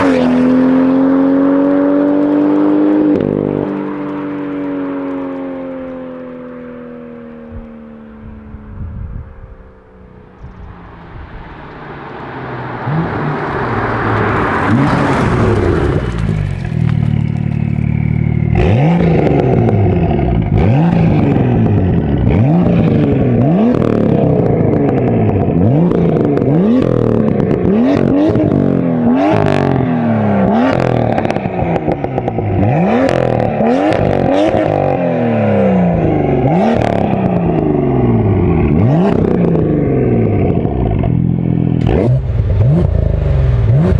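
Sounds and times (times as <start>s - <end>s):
car engine revving: 0.0s - 5.7s, 9.6s - 43.9s
exhaust crackles and pops: 10.0s - 35.1s, 35.9s - 43.9s.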